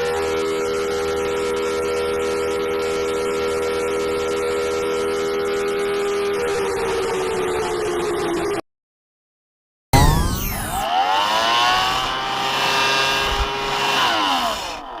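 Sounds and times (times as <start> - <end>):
emergency alert siren: 0.0 - 8.6, 10.0 - 14.4.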